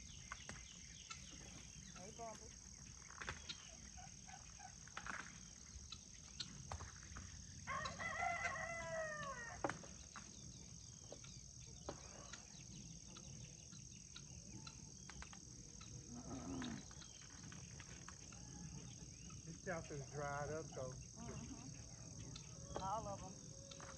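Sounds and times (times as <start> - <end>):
insects droning: 0.0 - 23.9
rooster crowing: 7.7 - 9.7.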